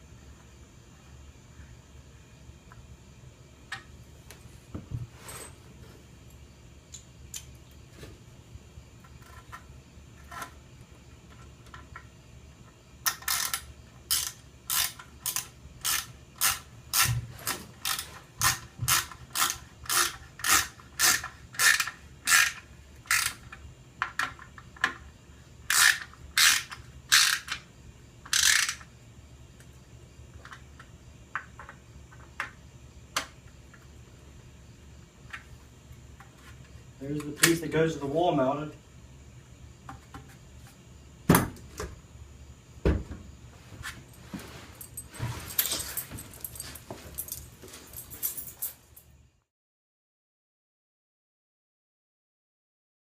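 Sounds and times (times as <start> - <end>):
ratcheting hand tool clicking: 13.1 - 17.1, 17.8 - 23.6, 25.7 - 27.6, 28.3 - 28.9.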